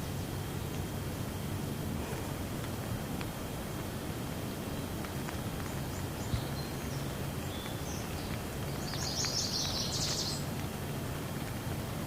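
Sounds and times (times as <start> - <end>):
rain hissing: 0.0 - 12.0
bird chirping: 5.7 - 10.5.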